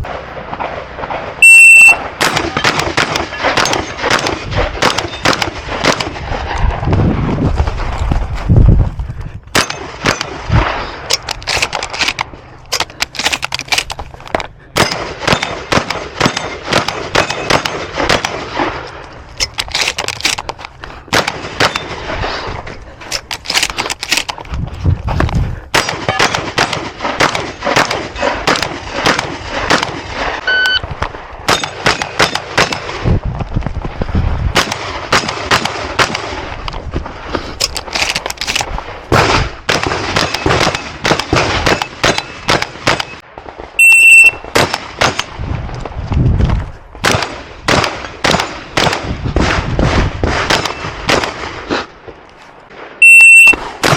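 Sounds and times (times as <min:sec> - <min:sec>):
shotgun shots echoing: 0:00.0 - 0:06.3, 0:09.5 - 0:10.5, 0:14.7 - 0:18.8, 0:21.1 - 0:22.0, 0:25.7 - 0:30.4, 0:31.5 - 0:33.0, 0:34.6 - 0:36.4, 0:47.0 - 0:51.8, 0:53.0 - 0:53.9.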